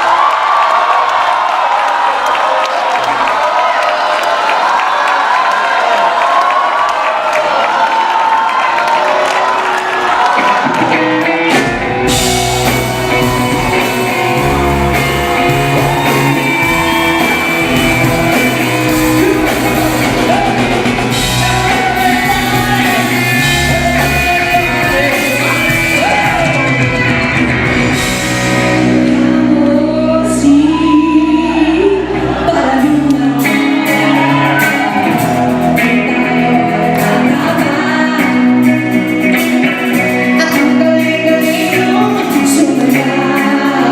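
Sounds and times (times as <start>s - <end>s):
live pop rock band: 7.9s - 43.9s
woman singing: 19.2s - 27.2s, 29.2s - 34.4s, 35.8s - 39.1s, 40.0s - 43.9s.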